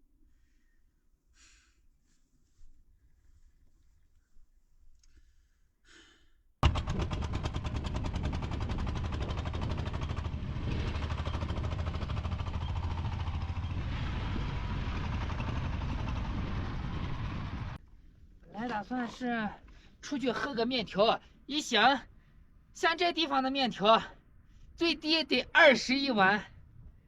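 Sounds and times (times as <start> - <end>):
small engine chugging: 6.6 - 17.8.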